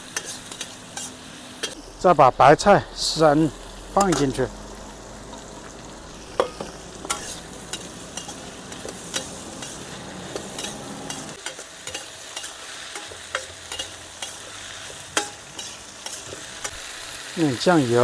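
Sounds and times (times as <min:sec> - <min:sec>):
food sizzling in a pan: 0:00.0 - 0:18.0
utensil scraping and clinking pan: 0:06.3 - 0:16.8.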